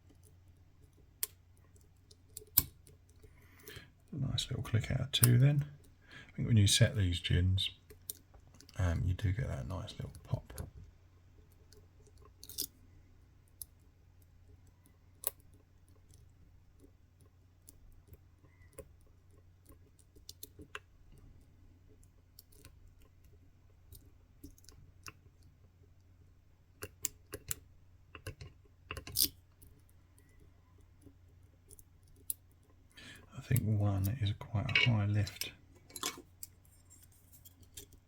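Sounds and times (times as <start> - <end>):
faint low hum: 0.0 - 38.0
lock pick clicking pins: 2.3 - 2.9, 26.8 - 29.6.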